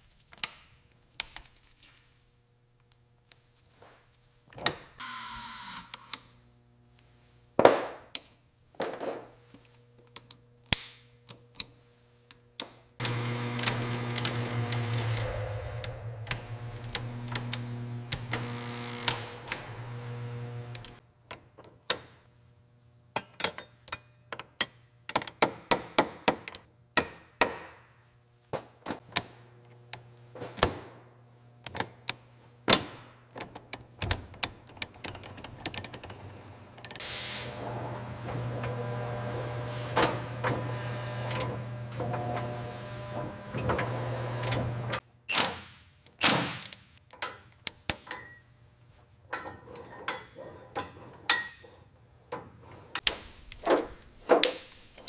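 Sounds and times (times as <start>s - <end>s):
machine running: 5.0s - 6.2s, 13.0s - 21.0s, 34.9s - 45.0s.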